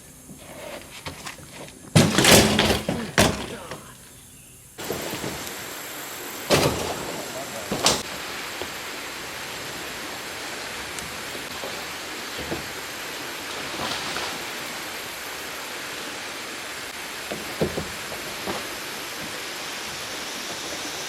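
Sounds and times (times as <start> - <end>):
short knocks and bumps: 1.0 - 4.0, 10.3 - 15.0, 17.2 - 20.9
fast-flowing stream rushing: 4.8 - 21.0.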